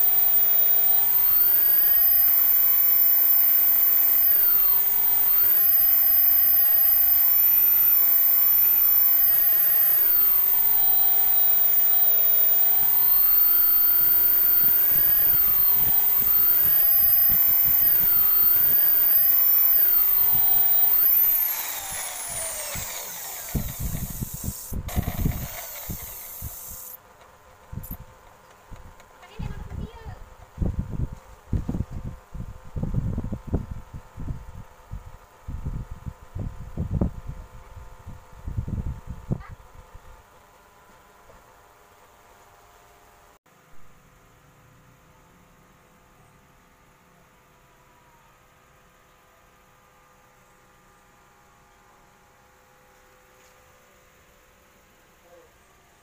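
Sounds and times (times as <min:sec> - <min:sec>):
electric power tool motor running: 0:00.0 - 0:27.0.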